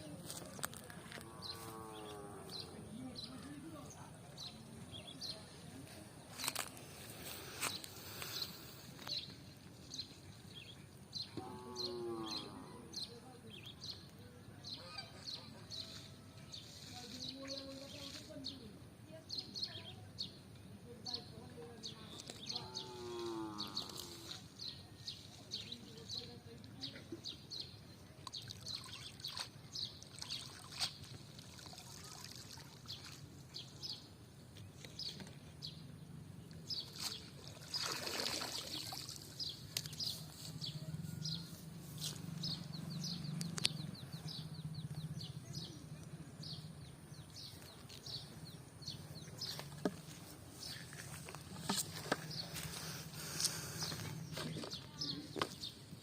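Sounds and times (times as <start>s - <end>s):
small birds chirping: 0.0s - 56.0s
water-like rush: 36.8s - 39.5s.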